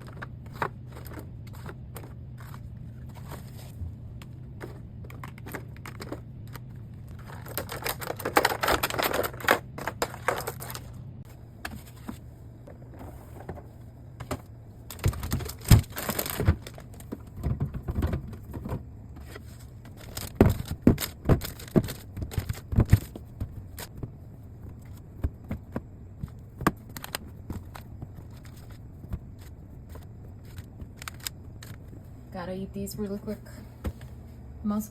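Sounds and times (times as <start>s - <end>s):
low steady hum: 0.0s - 34.9s
packaging rustling: 5.1s - 11.0s, 14.9s - 18.6s, 19.3s - 23.9s, 24.8s - 32.0s.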